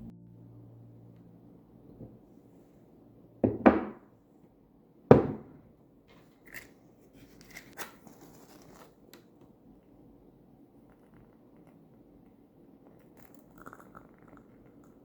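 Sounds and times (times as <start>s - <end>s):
objects knocking: 3.4s - 4.0s.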